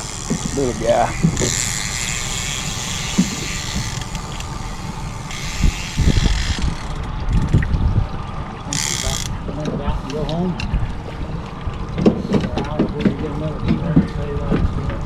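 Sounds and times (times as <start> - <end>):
fishing reel whirring: 0.0 - 7.1, 8.7 - 9.4
boat motor running: 0.0 - 15.0.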